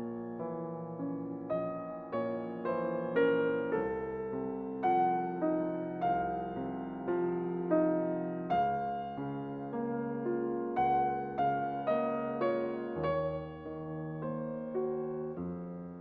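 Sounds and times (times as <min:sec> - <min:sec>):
soft piano melody: 0:00.0 - 0:16.0.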